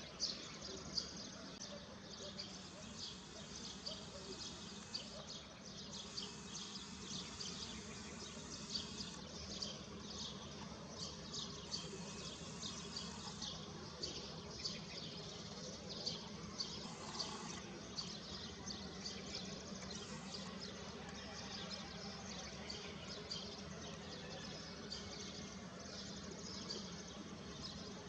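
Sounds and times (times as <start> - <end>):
faint low hum: 0.0 - 28.0
small birds chirping: 0.0 - 28.0.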